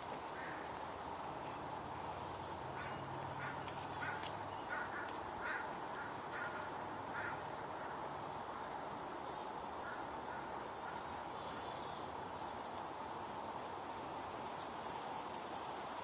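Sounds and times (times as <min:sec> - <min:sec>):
small stream rushing: 0:09.6 - 0:16.0.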